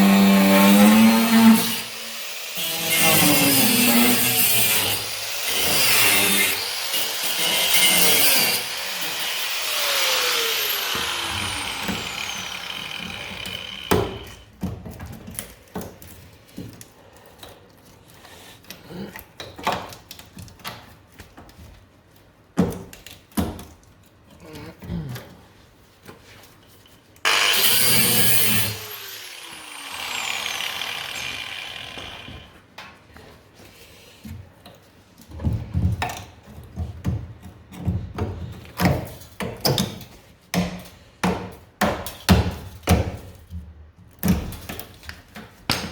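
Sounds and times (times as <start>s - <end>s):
power tool on sheet metal: 0.0s - 14.4s, 27.2s - 32.6s.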